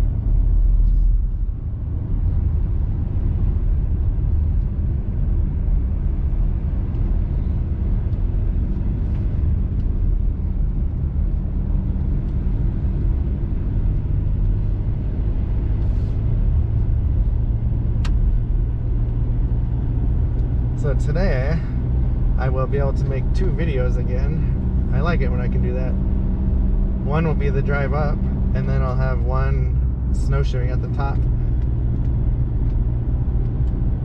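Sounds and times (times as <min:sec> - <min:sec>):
truck engine and tyre rumble: 0:00.0 - 0:34.0.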